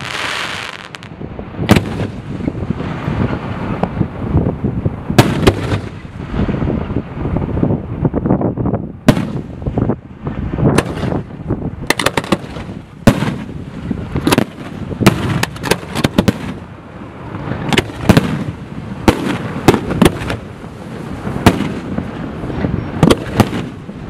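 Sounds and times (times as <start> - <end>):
fireworks bangs: 0.0 - 3.9, 5.1 - 6.6, 9.0 - 9.9, 10.6 - 16.7, 17.5 - 24.0
low rumble of launches: 0.0 - 24.0.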